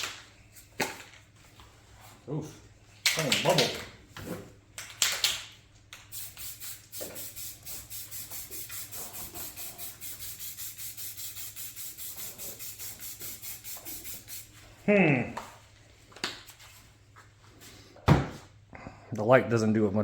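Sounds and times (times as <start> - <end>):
spray can hissing in pulses: 6.0 - 14.6.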